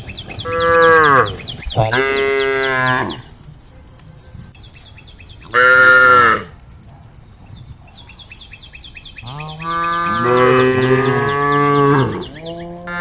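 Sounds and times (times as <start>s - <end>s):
cows mooing: 0.4s - 3.3s, 5.5s - 6.5s, 9.2s - 13.0s.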